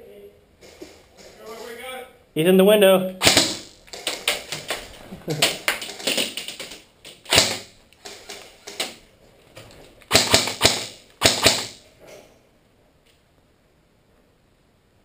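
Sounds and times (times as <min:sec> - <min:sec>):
airsoft gunshots: 0:03.2 - 0:04.5, 0:07.3 - 0:07.7, 0:10.1 - 0:11.8.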